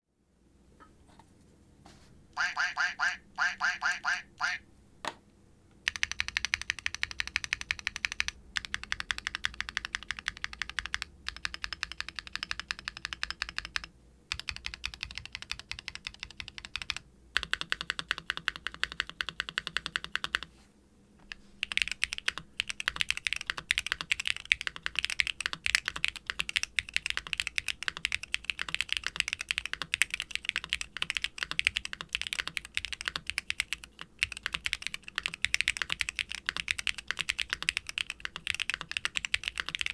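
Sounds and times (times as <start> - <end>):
fast typing on mechanical keyboard: 5.9 - 20.5, 21.6 - 39.9.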